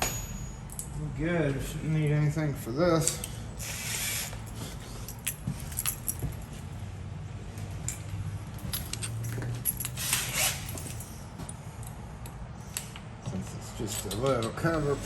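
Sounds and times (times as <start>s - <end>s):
lock hardware jingling and clicking: 0.0s - 1.1s, 3.0s - 3.4s, 4.4s - 6.7s, 7.6s - 13.0s, 13.8s - 14.6s.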